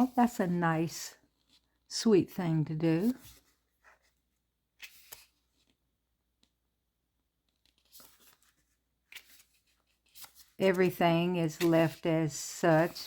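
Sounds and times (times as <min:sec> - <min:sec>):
paper pages turning: 0:03.0 - 0:06.7, 0:07.3 - 0:13.0.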